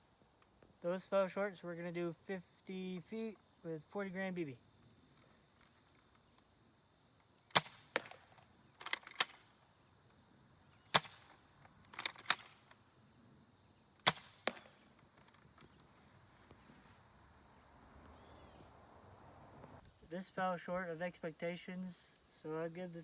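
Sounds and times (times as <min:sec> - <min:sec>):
airsoft rifle snaps: 0:07.5 - 0:08.2, 0:08.8 - 0:09.5, 0:10.9 - 0:11.3, 0:11.9 - 0:12.8.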